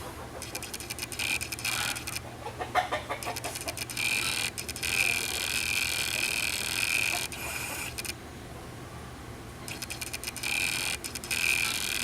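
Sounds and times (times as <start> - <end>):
chickens and guinea fowl calling: 0.0 - 0.6, 1.7 - 3.8.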